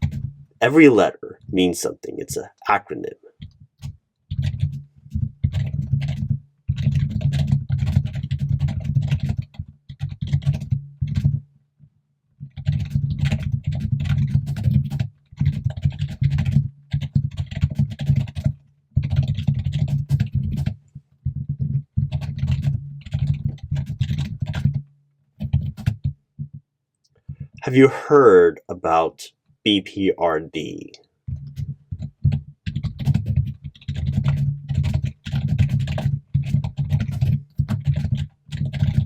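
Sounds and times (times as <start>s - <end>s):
fast typing on a keyboard: 0.0s - 0.3s, 3.4s - 11.4s, 12.4s - 24.8s, 25.4s - 26.2s, 31.3s - 39.0s.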